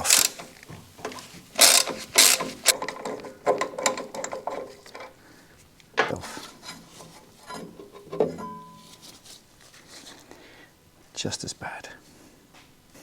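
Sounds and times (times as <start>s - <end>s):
ratchet wrench clicking: 0.0s - 0.5s, 1.6s - 5.1s
metal clinks: 7.5s - 9.1s.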